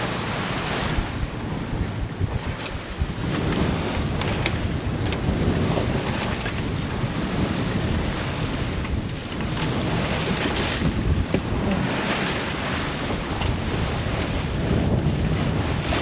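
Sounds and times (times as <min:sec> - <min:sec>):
water splashing along hull: 0:00.0 - 0:16.0
wind buffeting microphone: 0:00.0 - 0:16.0.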